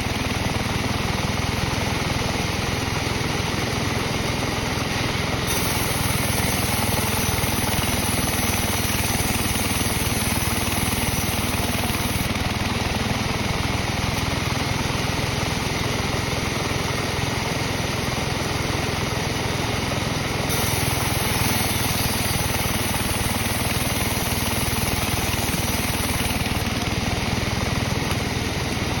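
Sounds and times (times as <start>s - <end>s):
sawmill saw running: 0.0s - 29.0s
high hiss: 5.5s - 12.3s, 20.5s - 26.6s.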